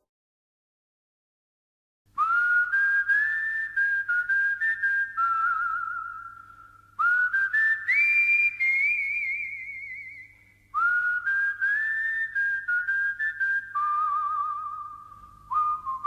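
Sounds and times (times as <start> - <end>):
whistled tune: 2.2 - 16.0.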